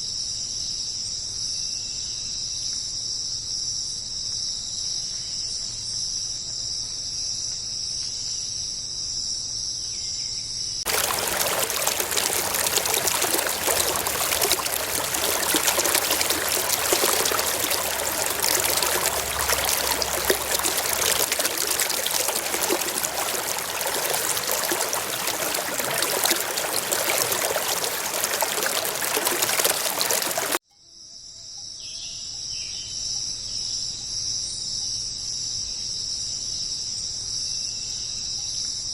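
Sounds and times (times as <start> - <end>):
insect chorus: 0.1 - 38.9
rushing water: 10.9 - 30.6.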